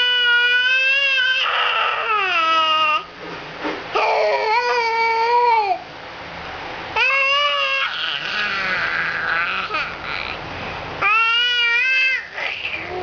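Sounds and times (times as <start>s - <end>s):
baby wailing: 0.0s - 3.1s, 4.0s - 5.8s, 7.0s - 10.4s, 11.0s - 13.0s.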